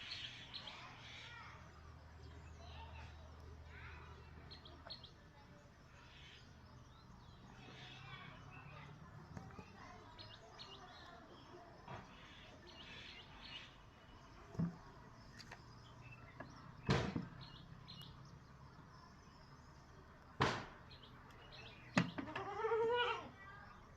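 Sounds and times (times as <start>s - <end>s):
faint bird chirps: 0.0s - 23.9s
sharp thump: 16.8s - 17.4s, 20.4s - 20.8s.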